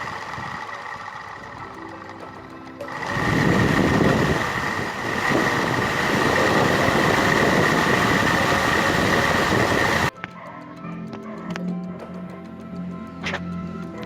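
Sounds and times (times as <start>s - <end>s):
high-pitched whine: 0.0s - 10.1s
rough engine running: 0.0s - 10.1s.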